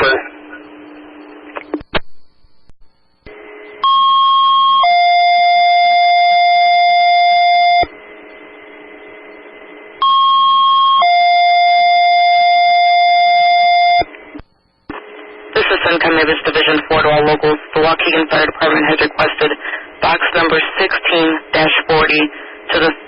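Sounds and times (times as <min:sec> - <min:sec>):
radio hiss: 0:00.0 - 0:01.9, 0:14.1 - 0:23.0
two-tone paging tones: 0:10.0 - 0:14.0.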